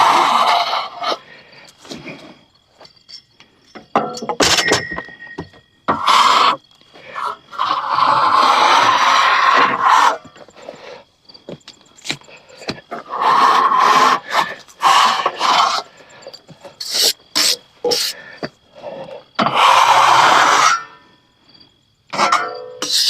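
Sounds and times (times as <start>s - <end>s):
scraping and rubbing: 5.9s - 11.0s, 12.0s - 21.0s.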